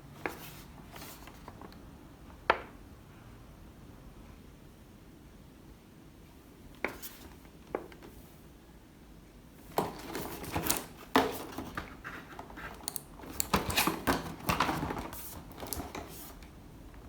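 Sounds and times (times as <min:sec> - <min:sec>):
plastic packaging rustling: 0:09.6 - 0:16.5.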